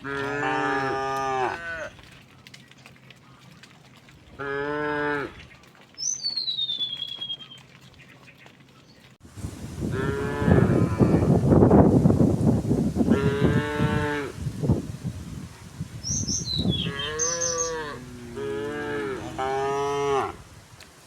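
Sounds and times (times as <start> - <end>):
cows mooing: 0.0 - 2.0, 4.4 - 5.5, 9.9 - 11.4, 13.1 - 14.4, 16.8 - 20.4.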